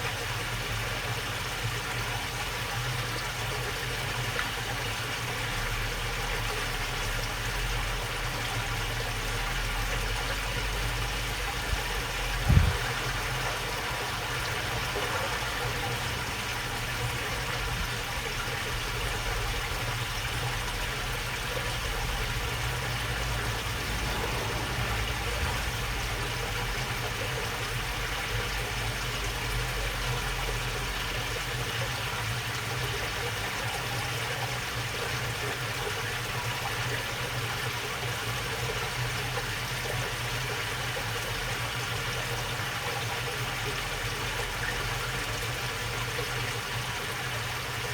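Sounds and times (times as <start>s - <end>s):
water babbling in a channel: 0.0s - 47.9s
steady low rumble: 10.6s - 28.9s.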